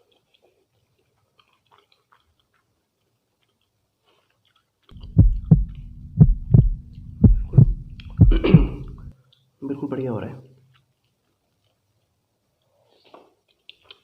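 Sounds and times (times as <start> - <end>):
heartbeat double thumps: 4.9 - 9.1
low hum: 4.9 - 9.1.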